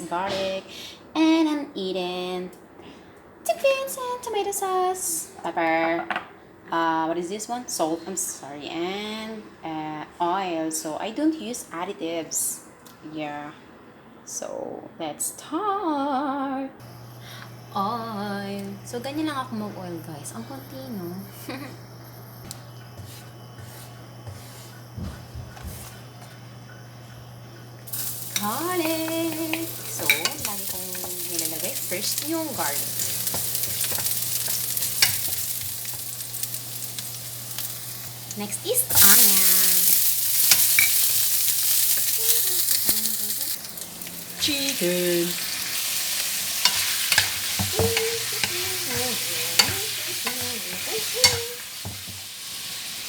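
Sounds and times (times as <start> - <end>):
steady low hum: 16.7 - 51.7
garlic sizzling in hot oil: 16.8 - 53.0
utensil knocking and scraping pan: 22.8 - 26.4, 27.9 - 37.1, 46.6 - 52.3.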